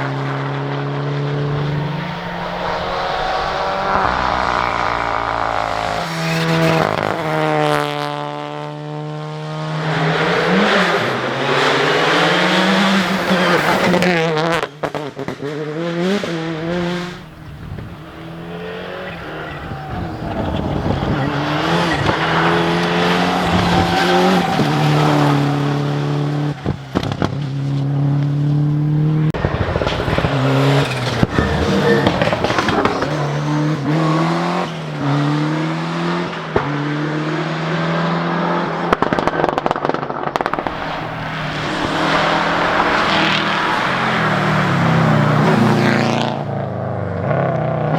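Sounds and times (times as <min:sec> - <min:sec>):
rally car engines revving: 0:00.0 - 0:47.9
sharp cracks: 0:38.9 - 0:45.4.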